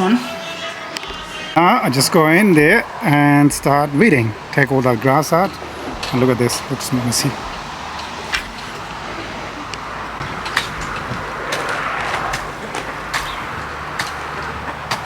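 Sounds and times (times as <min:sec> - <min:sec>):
grass and weeds rustling: 0:01.0 - 0:15.0
stems and roots snapping: 0:02.0 - 0:15.0.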